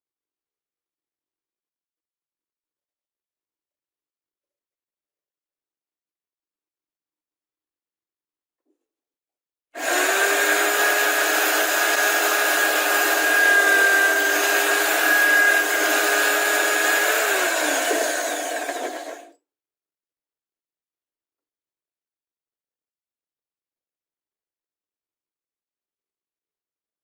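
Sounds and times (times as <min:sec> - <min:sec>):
electric power tool whining: 0:09.8 - 0:19.3.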